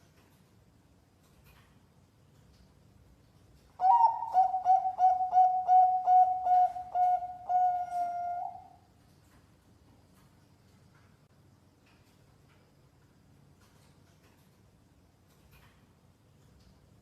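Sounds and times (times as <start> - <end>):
dove cooing: 3.8 - 8.8.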